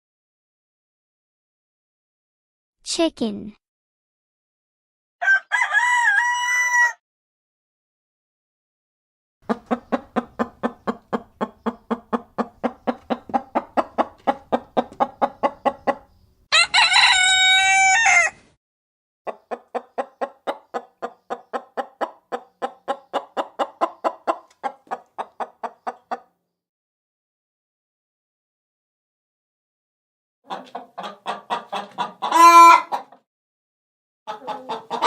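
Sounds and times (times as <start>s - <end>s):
rooster crowing: 5.2s - 7.0s, 16.5s - 18.4s
chicken clucking: 9.4s - 17.6s, 19.3s - 26.4s, 30.5s - 33.2s, 34.3s - 35.0s.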